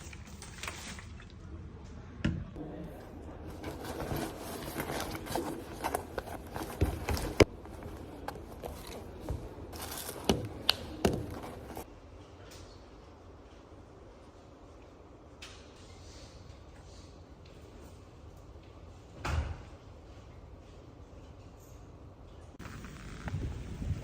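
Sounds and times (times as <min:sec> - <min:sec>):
rustling: 0:03.5 - 0:11.9.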